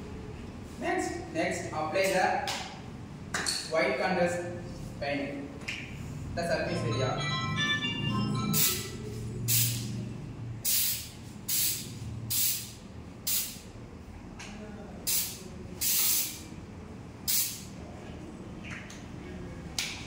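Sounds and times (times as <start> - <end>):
aerosol spray can hissing: 10.6 - 12.7, 15.1 - 16.4.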